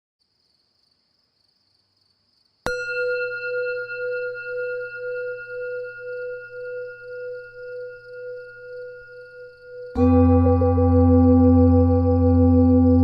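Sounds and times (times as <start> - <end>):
meditation bell ringing: 2.7 - 13.0.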